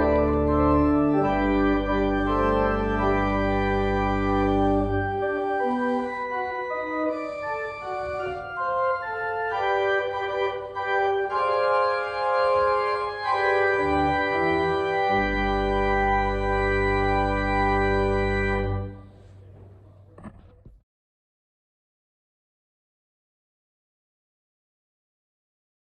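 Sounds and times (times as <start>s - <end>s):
deep organ bass note: 0.0s - 19.1s
organ playing sustained chords: 0.0s - 19.5s.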